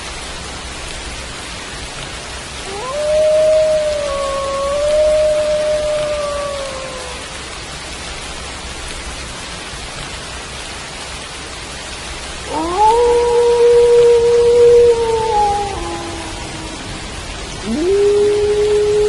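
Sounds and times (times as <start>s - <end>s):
steady rain: 0.0s - 19.0s
wolf howling: 2.6s - 7.3s, 12.5s - 19.0s.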